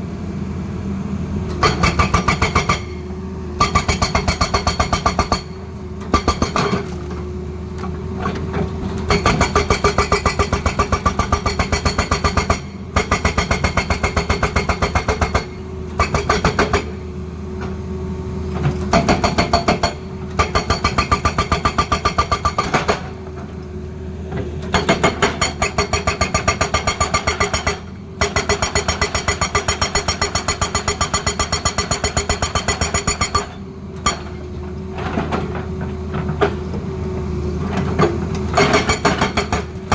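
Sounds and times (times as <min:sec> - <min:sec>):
hydraulic breaker hammering: 0:01.5 - 0:03.0, 0:03.6 - 0:06.9, 0:09.1 - 0:17.0, 0:18.9 - 0:23.2, 0:38.5 - 0:39.9.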